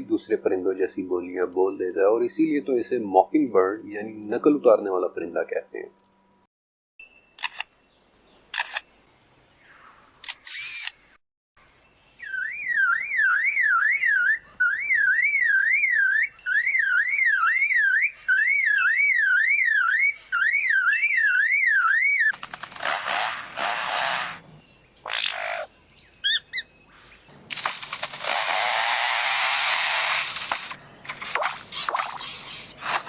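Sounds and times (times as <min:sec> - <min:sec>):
mockingbird singing: 0:11.8 - 0:22.7, 0:24.4 - 0:28.2.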